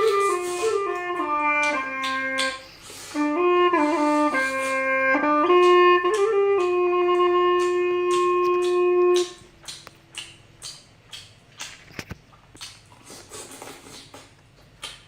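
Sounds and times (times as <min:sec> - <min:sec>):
wind instrument slow melody: 0:00.0 - 0:09.4.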